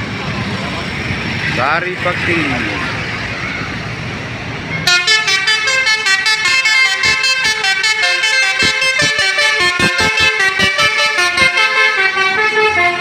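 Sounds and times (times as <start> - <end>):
engine and traffic noise: 0.0 - 13.0
bus multi-tone horn melody: 4.9 - 13.0.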